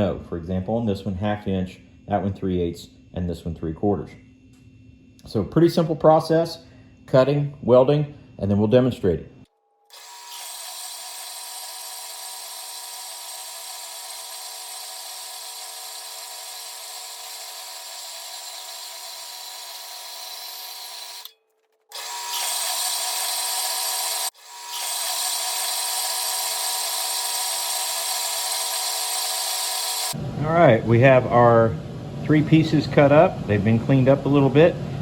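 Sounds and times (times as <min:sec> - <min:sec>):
power tool cutting steel: 0:09.9 - 0:30.2.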